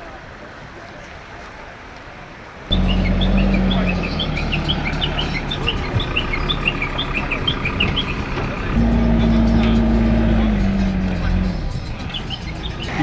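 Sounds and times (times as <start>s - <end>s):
birds chirping: 2.3s - 13.0s
steady low hum: 2.7s - 12.8s.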